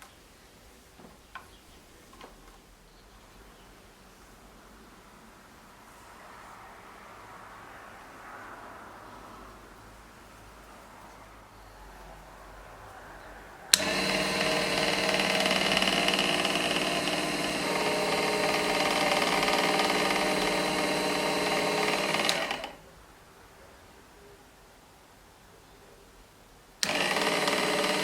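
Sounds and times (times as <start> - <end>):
electric motor whine: 13.7 - 22.8, 26.8 - 28.0
motor switch click: 13.7 - 22.8, 26.8 - 28.0.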